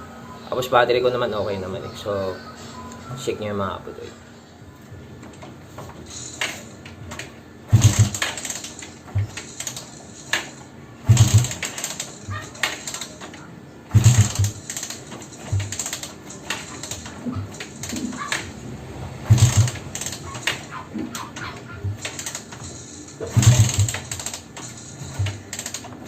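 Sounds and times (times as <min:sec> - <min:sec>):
motorcycle kick start clattering: 0:05.2 - 0:18.6, 0:19.2 - 0:26.0.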